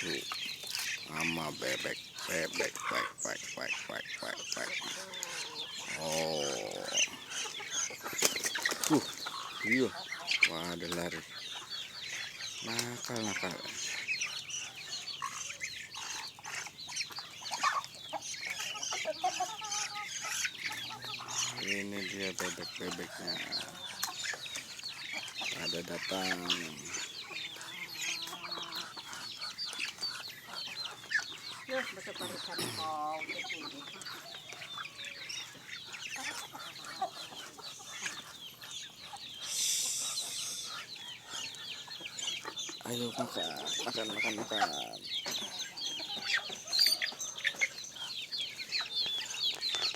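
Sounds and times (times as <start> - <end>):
chickens and ducks calling: 0.0 - 49.9
high chirps: 39.3 - 40.9.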